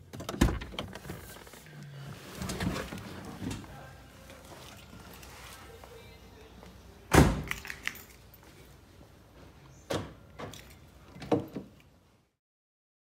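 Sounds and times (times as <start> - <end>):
car door slamming: 7.1 - 7.5.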